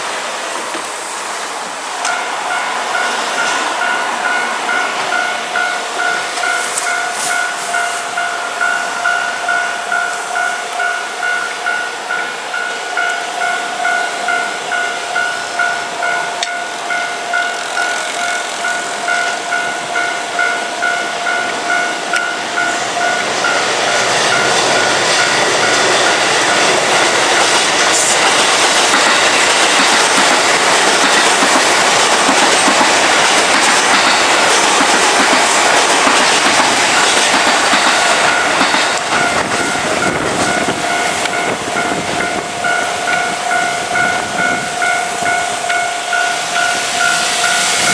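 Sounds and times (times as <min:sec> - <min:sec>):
electric train passing: 0:00.0 - 0:47.9
level-crossing alarm ding-ding: 0:02.0 - 0:27.6, 0:37.0 - 0:47.9.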